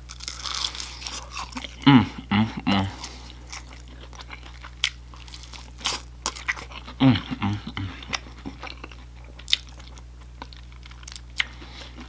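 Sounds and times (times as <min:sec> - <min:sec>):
chewing and crunching food: 0:00.0 - 0:12.0
person humming: 0:01.8 - 0:03.2, 0:07.0 - 0:08.1.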